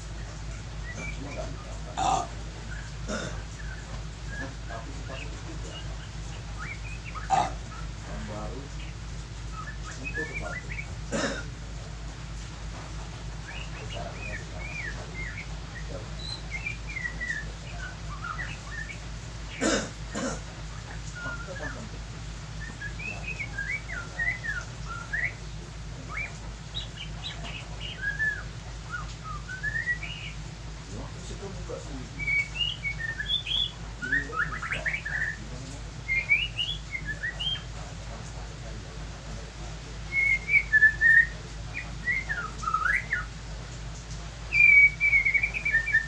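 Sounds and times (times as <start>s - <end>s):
small birds chirping: 0.0s - 46.0s
steady low hum: 0.0s - 46.0s.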